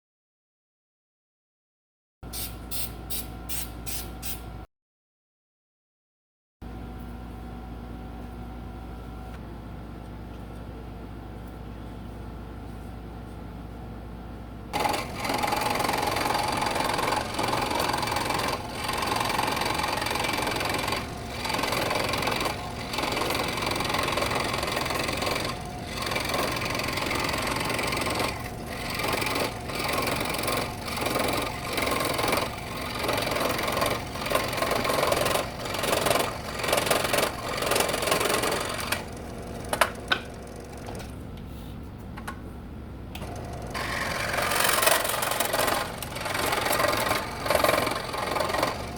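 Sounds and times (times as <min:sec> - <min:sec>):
scroll saw cutting wood: 0:14.8 - 0:40.0, 0:43.2 - 0:48.9.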